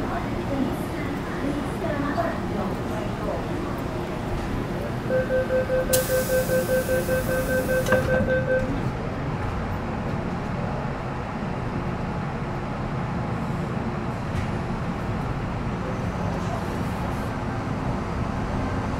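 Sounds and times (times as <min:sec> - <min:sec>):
train low rumble: 0:00.0 - 0:18.9
rapid warning beeps: 0:05.1 - 0:08.7
air hiss from doors: 0:05.9 - 0:07.4
train doors thumping shut: 0:07.6 - 0:08.8.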